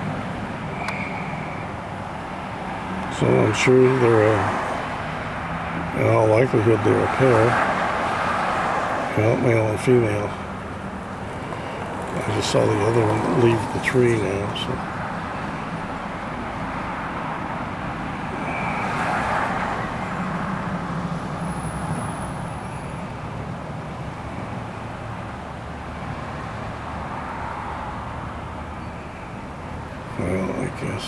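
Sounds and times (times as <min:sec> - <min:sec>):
road traffic noise: 0:00.0 - 0:31.0
vehicle passing: 0:02.0 - 0:23.0.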